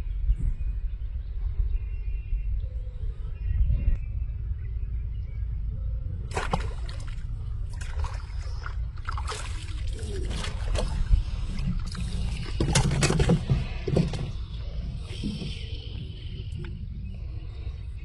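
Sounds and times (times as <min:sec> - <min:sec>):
water sloshing and splashing: 0:06.3 - 0:17.6.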